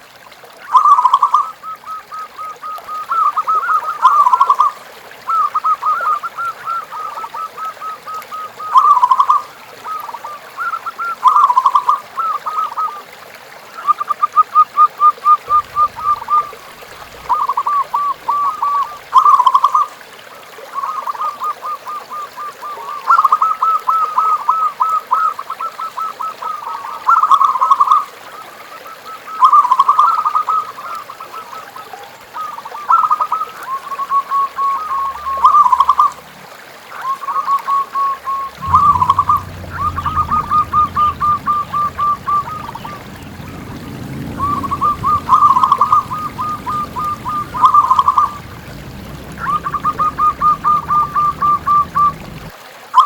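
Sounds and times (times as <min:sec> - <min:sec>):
doves cooing in pulsed notes: 0:15.5 - 0:19.6, 0:34.6 - 0:36.2, 0:38.0 - 0:52.5.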